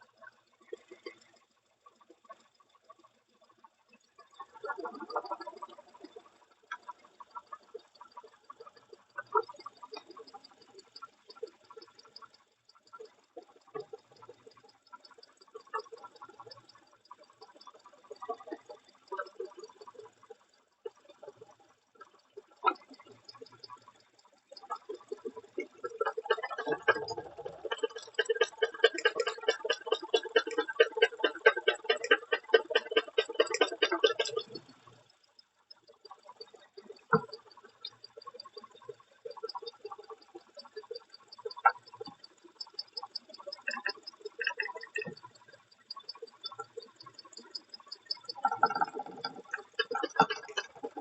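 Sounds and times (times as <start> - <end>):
engine running with rapid knocking: 26.0 - 34.8.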